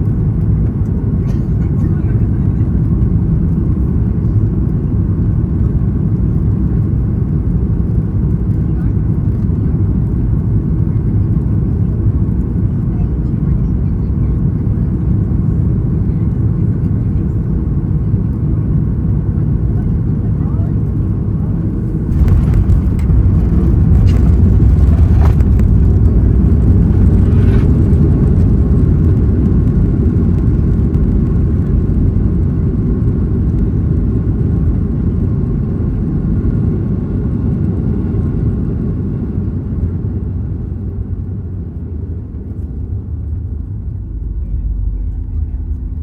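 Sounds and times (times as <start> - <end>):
aircraft cabin rumble: 0.0 - 46.0
rattles and clunks: 22.1 - 27.7.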